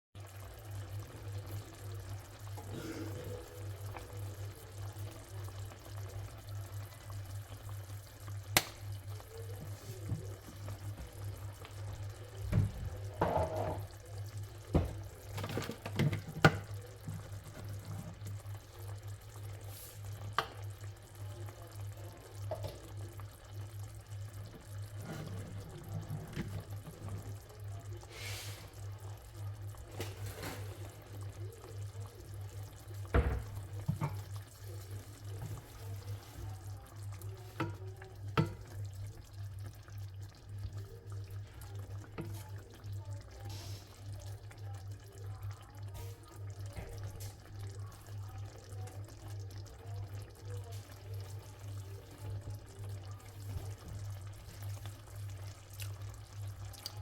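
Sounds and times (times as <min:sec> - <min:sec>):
tap water running into sink: 0:08.4 - 0:11.2, 0:11.8 - 0:18.2, 0:20.2 - 0:20.8, 0:24.5 - 0:27.6, 0:33.0 - 0:34.4, 0:35.3 - 0:39.2, 0:40.5 - 0:44.2, 0:45.9 - 0:55.0.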